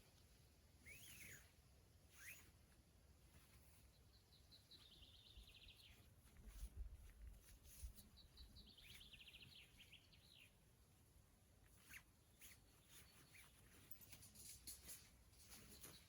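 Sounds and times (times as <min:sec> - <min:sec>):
songbird trilling and chirping: 0:03.8 - 0:06.6, 0:07.7 - 0:10.6.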